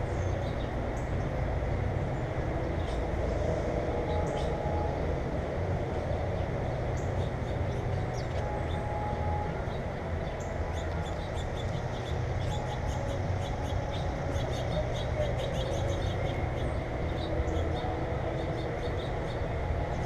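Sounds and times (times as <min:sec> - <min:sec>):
small birds chirping: 0:06.4 - 0:20.0.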